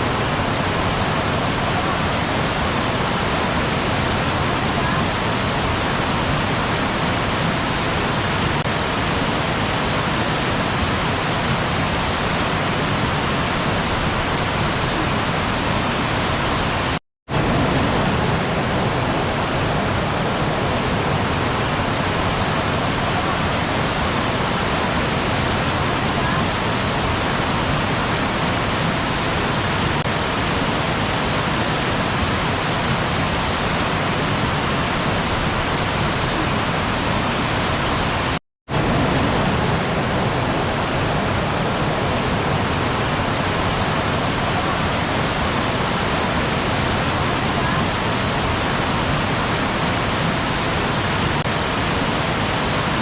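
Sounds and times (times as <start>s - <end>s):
waterfall rushing: 0.0s - 53.0s.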